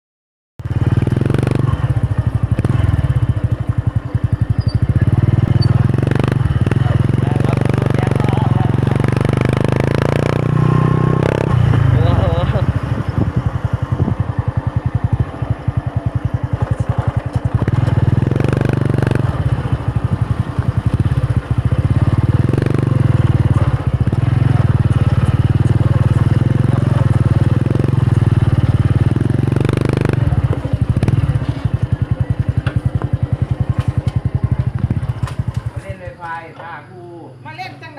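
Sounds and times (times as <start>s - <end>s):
small engine revving: 4.3s - 14.3s, 16.5s - 36.0s.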